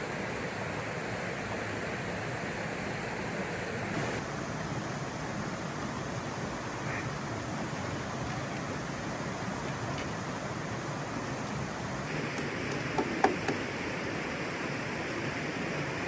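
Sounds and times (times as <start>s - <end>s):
water rushing: 0.0s - 16.0s
sharp knocks: 12.4s - 13.6s.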